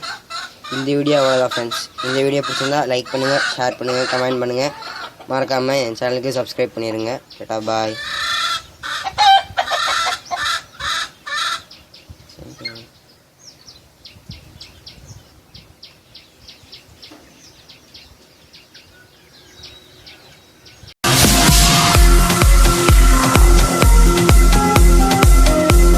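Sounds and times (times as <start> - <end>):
chicken clucking: 0.0 - 11.7
high bird chirps: 0.0 - 21.0
loud electronic music: 21.0 - 25.9.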